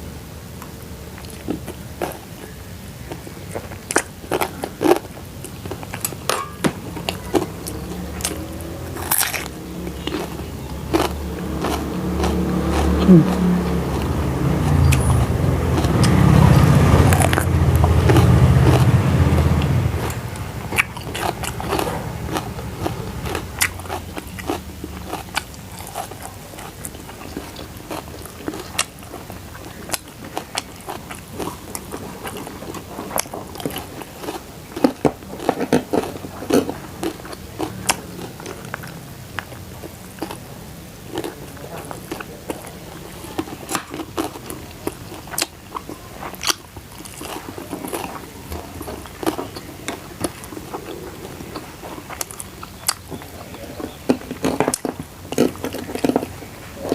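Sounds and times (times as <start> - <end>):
person chewing crunchy food: 1.1 - 56.9.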